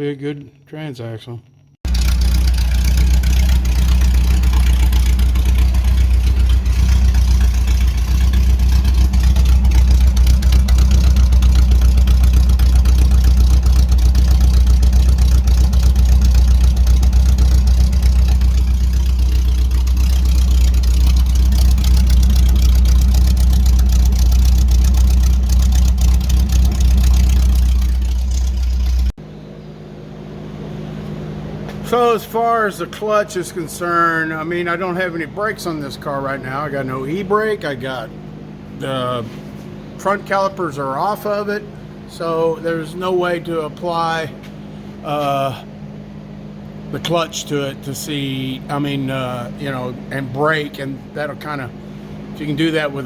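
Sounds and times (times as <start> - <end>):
car engine running loudly: 1.9 - 29.2.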